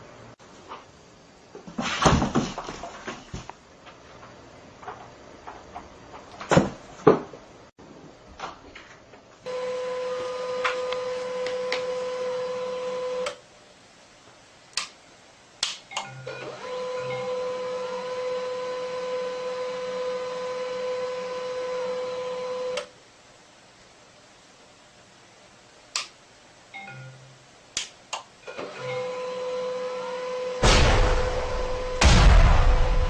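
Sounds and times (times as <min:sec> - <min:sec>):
sharp clicks: 0:14.7 - 0:15.0, 0:25.9 - 0:26.2.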